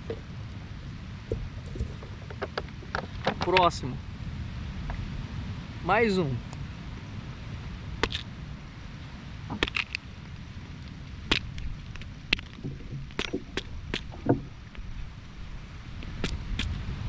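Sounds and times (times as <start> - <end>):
low rumble: 1.3 - 2.6.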